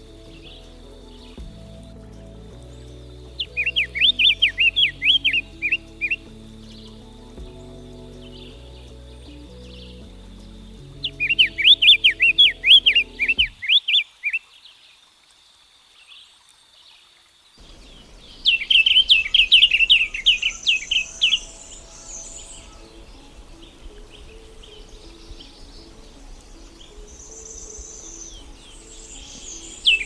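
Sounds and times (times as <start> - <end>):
bird singing whistled notes: 0.0 - 14.4, 17.6 - 30.0
faint high bird calls: 17.6 - 30.0.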